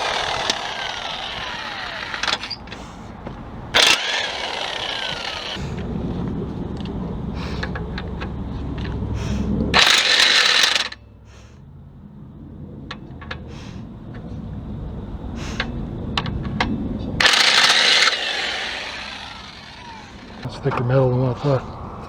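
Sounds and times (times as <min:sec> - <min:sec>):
power tool burst: 0:00.0 - 0:02.6, 0:03.8 - 0:05.6, 0:09.8 - 0:11.0, 0:17.2 - 0:20.4.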